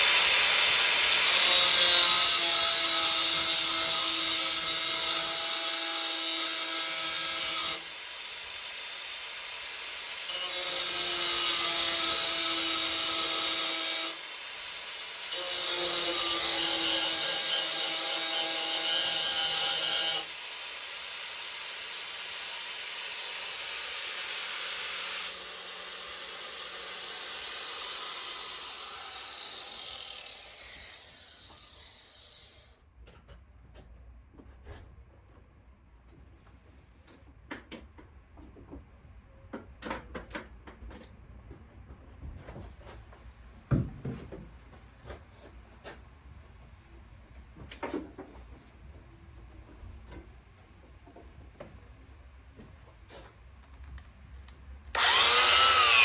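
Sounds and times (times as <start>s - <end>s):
power tool running: 18.3s - 32.6s, 54.9s - 56.0s
power tool spinning down whine: 22.0s - 32.6s, 54.9s - 56.0s.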